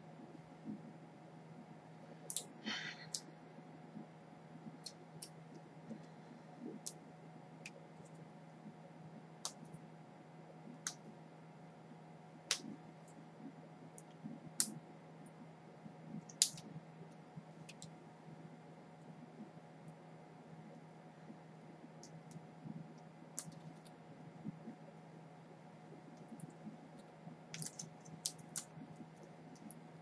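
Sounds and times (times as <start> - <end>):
sharp clicks of small hard objects: 2.3 - 2.5, 16.3 - 16.7, 27.5 - 29.8.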